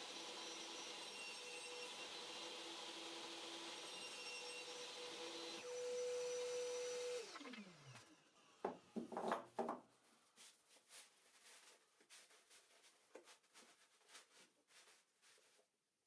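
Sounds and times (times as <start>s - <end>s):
power saw running and spinning down: 5.5s - 8.2s
wooden pieces knocking: 9.0s - 9.9s.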